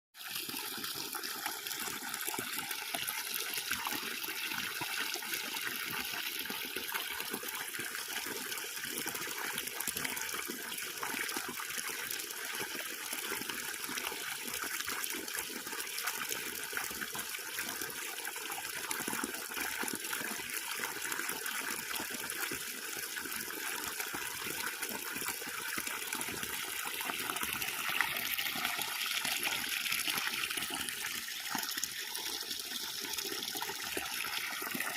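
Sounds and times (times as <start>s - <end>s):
water running steadily: 0.2s - 34.9s.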